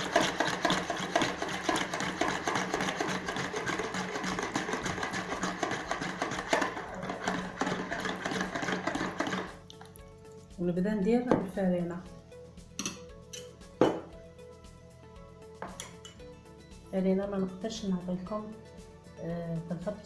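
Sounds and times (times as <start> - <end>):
electric hand mixer beating: 0.0 - 9.6.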